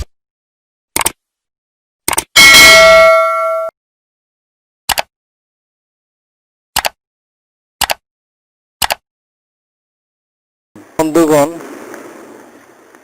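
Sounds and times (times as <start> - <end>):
bell-like chime ringing: 2.4 - 3.7.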